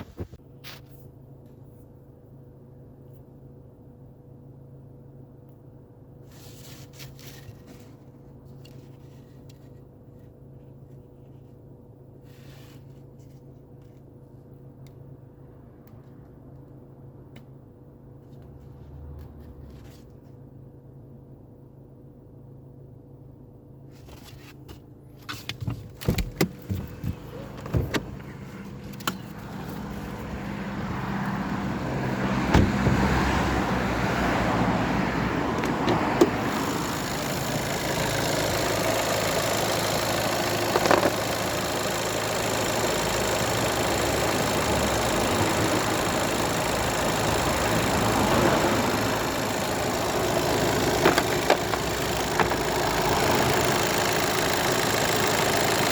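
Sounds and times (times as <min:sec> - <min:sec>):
diesel engine running: 0:25.9 - 0:55.9.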